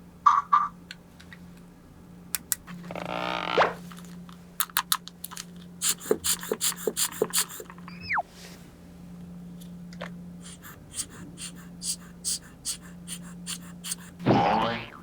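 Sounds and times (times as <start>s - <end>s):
plastic toy pieces clicking: 4.6s - 5.6s
steady low hum: 5.2s - 15.0s
drawn-out squeak: 7.8s - 8.3s
short falling whistle: 7.9s - 8.3s.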